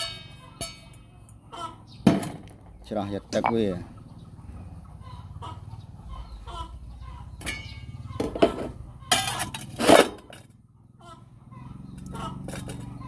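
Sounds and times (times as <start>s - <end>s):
chickens clucking: 0.0s - 9.7s, 10.6s - 13.0s.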